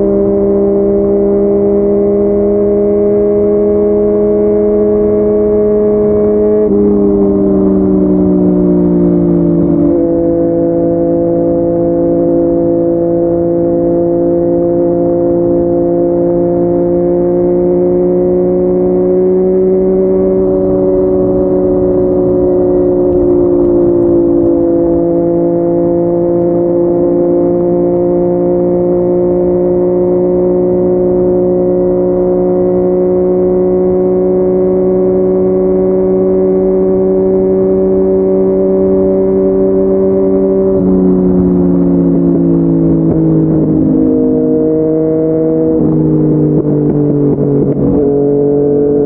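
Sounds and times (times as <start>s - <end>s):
motorcycle engine cruising: 0.0s - 49.0s.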